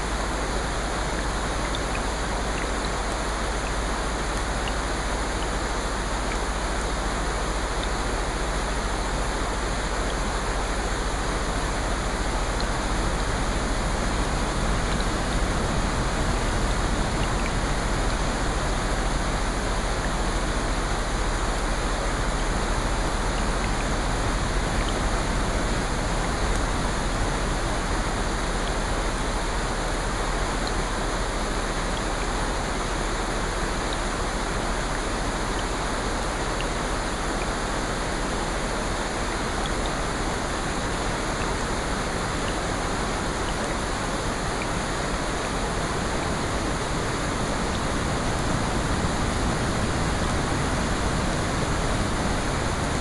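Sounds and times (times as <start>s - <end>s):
rushing water: 0.0s - 53.0s
faint ticks: 1.1s - 5.6s.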